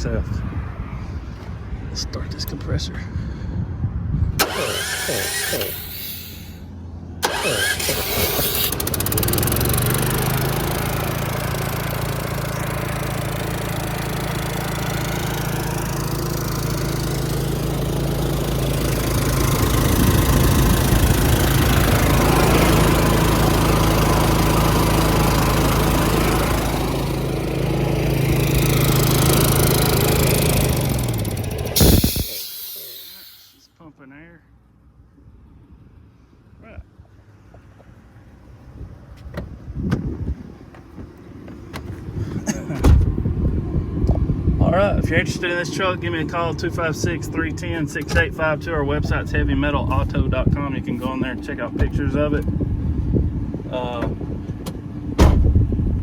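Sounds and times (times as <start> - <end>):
air compressor engine running: 4.4 - 33.7.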